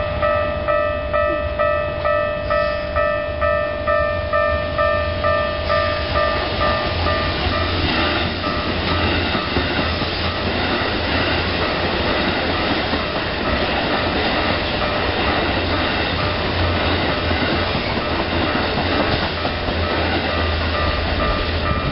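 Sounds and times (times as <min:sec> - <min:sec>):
electric train running noise: 0:00.0 - 0:21.9
level-crossing warning bell: 0:00.0 - 0:21.9
wheels clattering over rail joints: 0:06.4 - 0:21.9.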